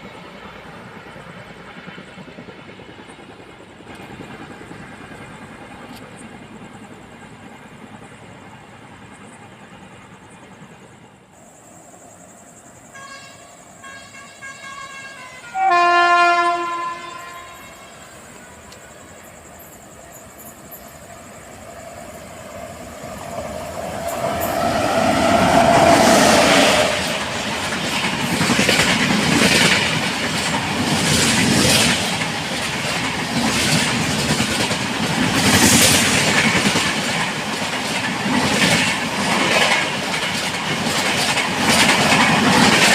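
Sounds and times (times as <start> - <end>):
approaching train rumble: 0.0 - 42.9
train horn: 12.9 - 18.4, 24.4 - 27.3.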